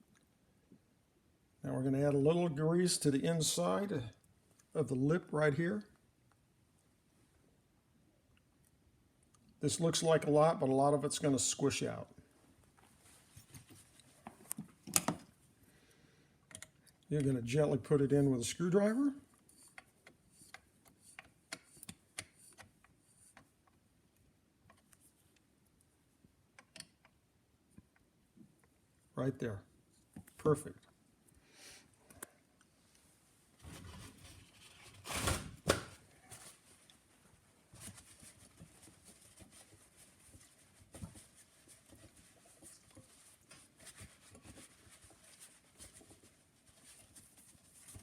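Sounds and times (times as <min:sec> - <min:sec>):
faint handling clicks and taps: 0:16.4 - 0:17.4, 0:19.3 - 0:23.9.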